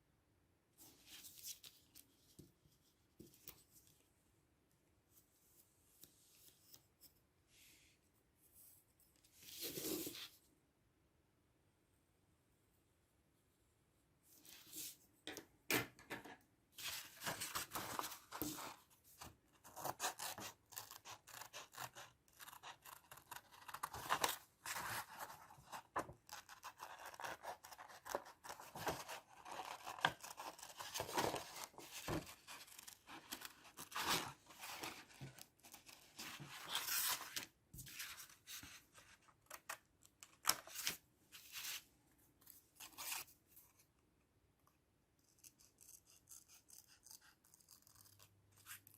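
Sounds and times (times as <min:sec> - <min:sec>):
paper rustling: 0:16.8 - 0:20.5, 0:23.2 - 0:39.8
scissors snipping paper: 0:19.6 - 0:34.3, 0:45.2 - 0:48.9.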